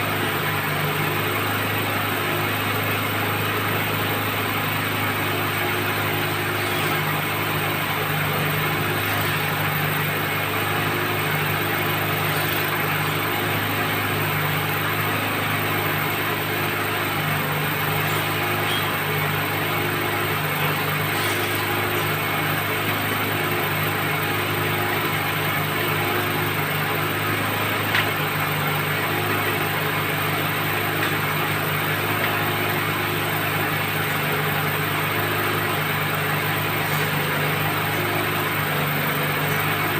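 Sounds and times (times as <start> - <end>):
drilling rig engine running: 0.0 - 39.9.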